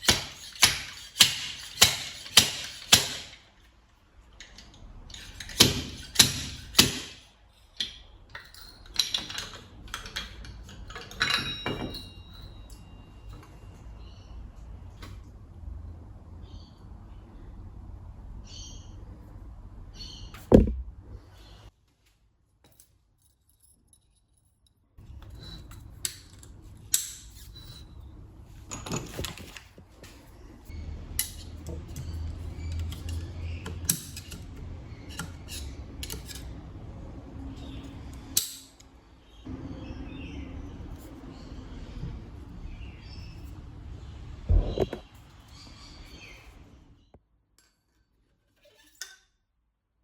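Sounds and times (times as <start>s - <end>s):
metal tools clinking: 7.5s - 13.0s
loud knock: 20.5s - 21.1s.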